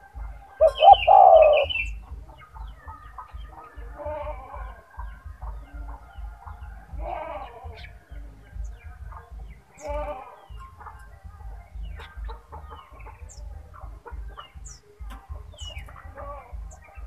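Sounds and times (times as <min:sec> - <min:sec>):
dove cooing: 0:00.0 - 0:02.1, 0:08.6 - 0:11.2
small birds chirping: 0:00.0 - 0:17.0.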